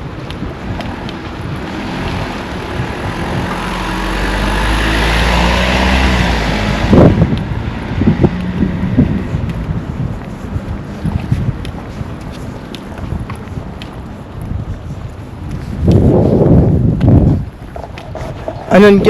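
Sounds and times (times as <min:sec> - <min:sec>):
vehicle driving past: 0:01.6 - 0:09.4
low thumps on microphone: 0:15.5 - 0:18.7.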